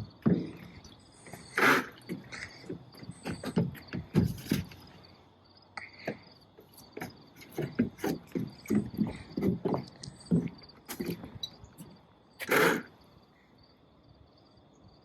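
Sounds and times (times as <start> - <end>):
knocks and handling thumps: 0.0 - 5.0, 6.0 - 12.0
crickets trilling: 0.0 - 15.0.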